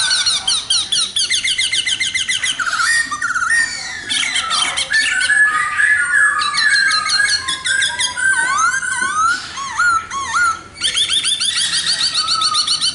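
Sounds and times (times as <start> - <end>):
laughingthrush singing: 0.0 - 12.9.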